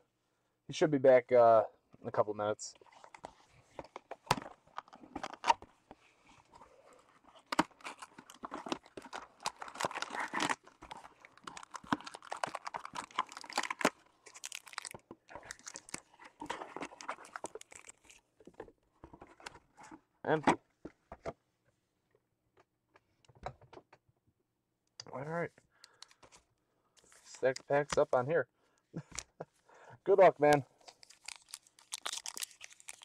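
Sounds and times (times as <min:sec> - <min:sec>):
card pack wrappers tearing: 0:07.3 - 0:18.2, 0:30.8 - 0:33.0.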